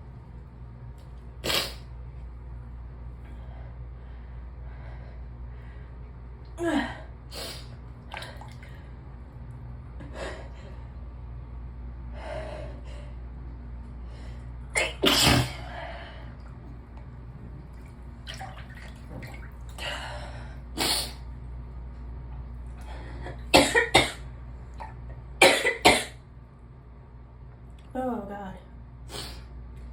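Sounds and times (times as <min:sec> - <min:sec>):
person sneezing: 0:01.4 - 0:01.9, 0:14.8 - 0:15.6
in-breaths: 0:03.2 - 0:09.0, 0:14.0 - 0:14.6, 0:15.6 - 0:16.4, 0:19.8 - 0:20.7, 0:22.8 - 0:23.5.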